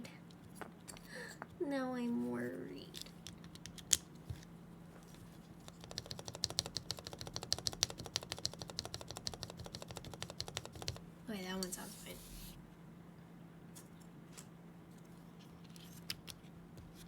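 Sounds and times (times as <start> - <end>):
keyboard key clicks: 5.7 - 11.0.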